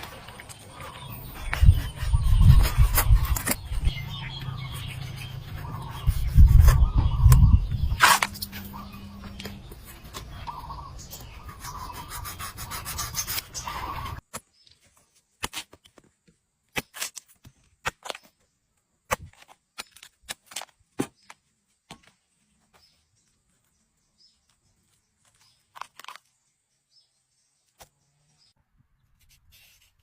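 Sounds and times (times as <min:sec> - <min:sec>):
rough rubbing and scraping: 0:00.0 - 0:14.2.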